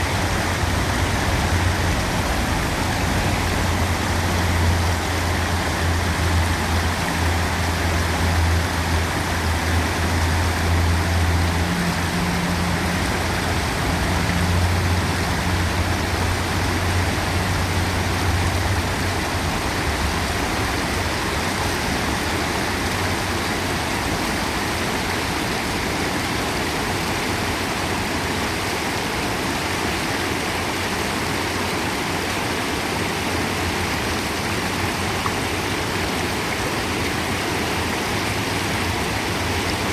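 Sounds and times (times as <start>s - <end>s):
low engine hum: 0.0s - 28.1s
river water rushing: 0.0s - 39.9s.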